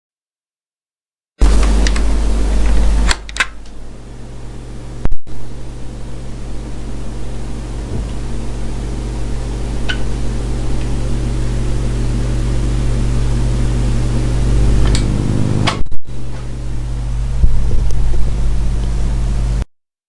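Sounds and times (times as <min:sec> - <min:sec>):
low electrical hum: 0:01.4 - 0:19.6
clicks: 0:14.8 - 0:16.0.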